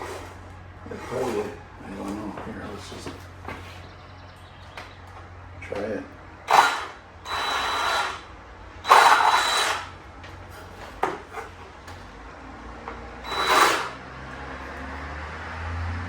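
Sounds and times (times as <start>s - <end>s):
power tool cutting wood: 0.0s - 1.6s, 6.4s - 10.0s, 13.2s - 14.9s.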